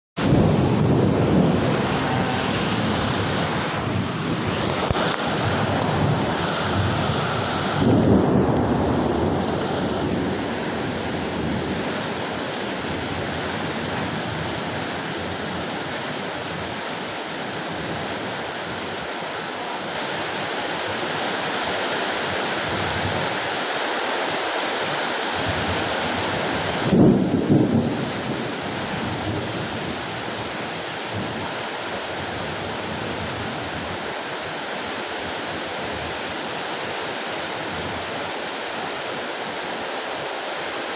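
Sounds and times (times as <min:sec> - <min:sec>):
thunder rumbling: 0:00.2 - 0:15.6, 0:26.8 - 0:30.0
heavy rain pouring: 0:00.2 - 0:40.9.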